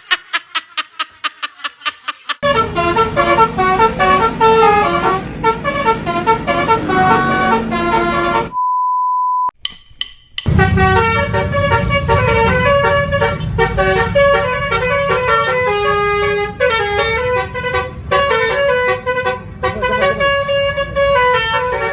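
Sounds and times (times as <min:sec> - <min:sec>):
musical bus horn tune: 0:02.4 - 0:08.6, 0:10.5 - 0:21.9
low rumble: 0:10.5 - 0:14.1.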